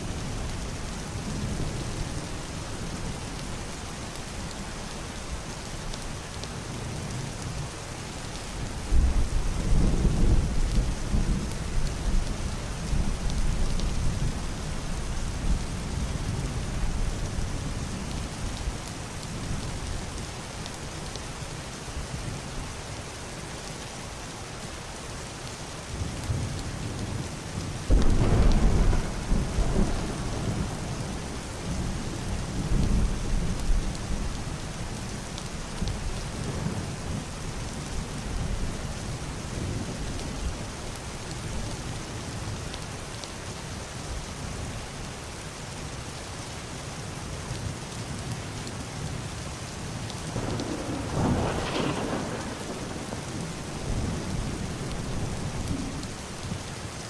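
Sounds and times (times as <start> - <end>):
heavy rain on roof and window: 0.0 - 57.0
thunder rumble: 27.9 - 34.5, 50.3 - 56.6.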